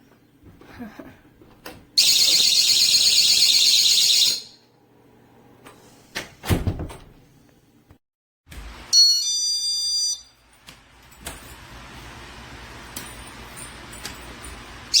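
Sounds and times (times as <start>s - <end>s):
alarm siren warbling: 2.0s - 4.6s.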